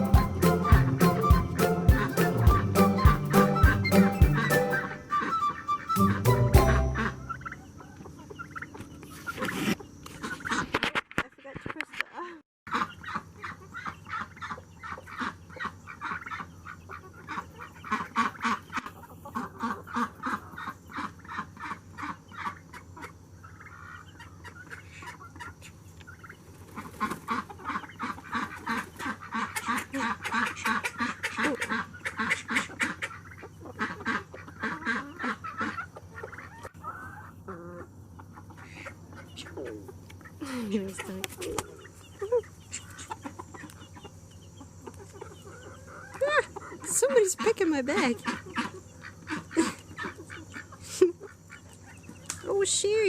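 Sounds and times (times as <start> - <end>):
poultry honking calls: 0.0 - 10.8, 12.7 - 25.5, 26.8 - 43.7
clucking: 0.0 - 11.8, 12.7 - 52.5.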